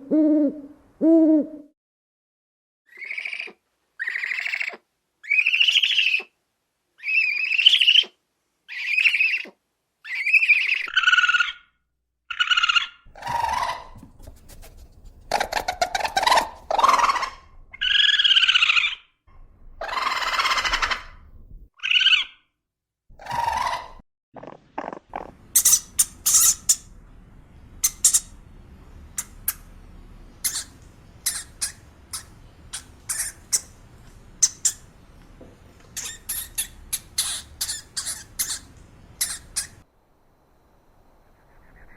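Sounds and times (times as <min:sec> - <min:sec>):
rapid squeaks and clicks: 0:13.3 - 0:17.3
animal calling: 0:15.3 - 0:19.1.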